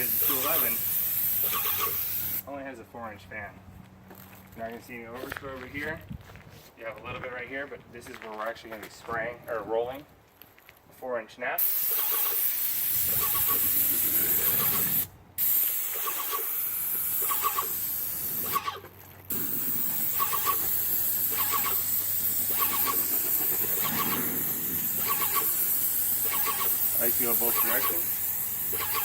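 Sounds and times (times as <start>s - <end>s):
paint sprayer hissing: 0.0s - 2.4s, 11.6s - 29.0s.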